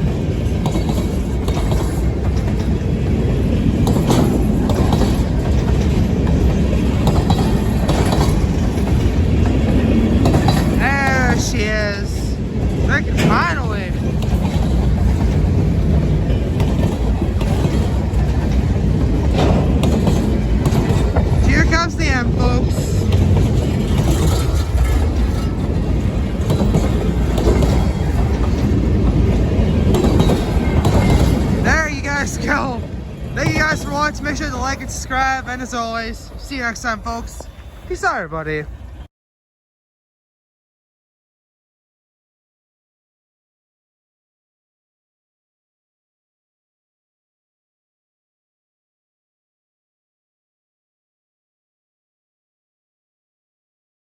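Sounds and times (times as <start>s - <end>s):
wheels clacking over rail joints: 0.0s - 38.7s
freight train rumbling past: 0.0s - 39.1s
clicks over rail joints: 23.0s - 32.7s.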